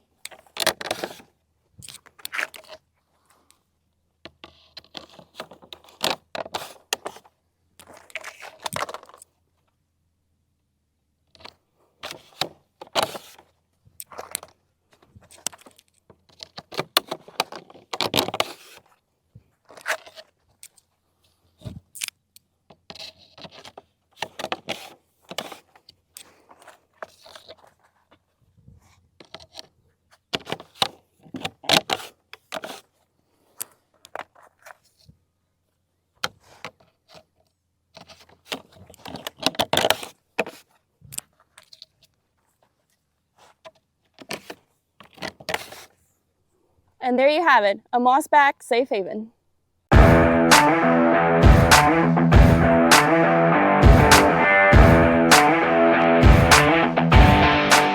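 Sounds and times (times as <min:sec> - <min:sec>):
plastic parts clattering and clicking: 0:04.3 - 0:09.4, 0:15.2 - 0:18.8.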